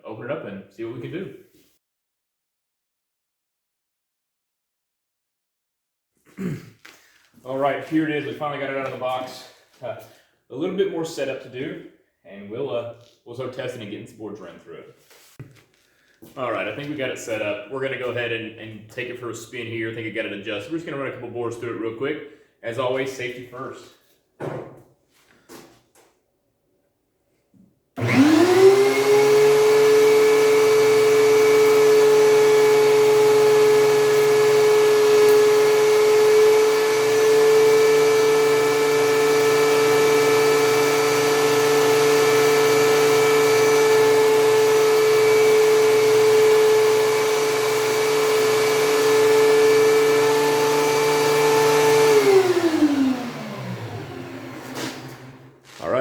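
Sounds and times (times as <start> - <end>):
thickness planer whining: 28.0 - 56.0.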